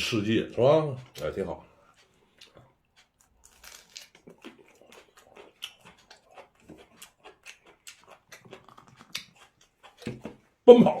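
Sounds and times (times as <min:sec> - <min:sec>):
person chewing and smacking: 0:00.9 - 0:10.7.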